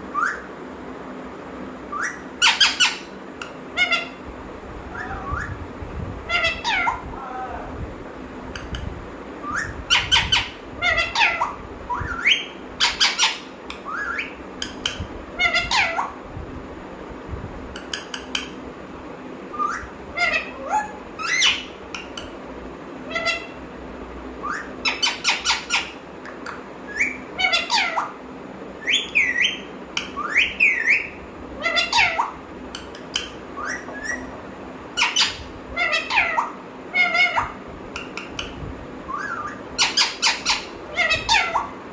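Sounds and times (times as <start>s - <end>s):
parrot squawking and whistling: 0.1s - 0.5s, 1.9s - 3.1s, 3.7s - 4.2s, 6.2s - 7.1s, 9.4s - 16.2s, 19.5s - 22.1s, 23.1s - 23.6s, 24.4s - 26.0s, 26.9s - 28.2s, 28.8s - 32.4s, 33.2s - 34.3s, 35.0s - 41.8s.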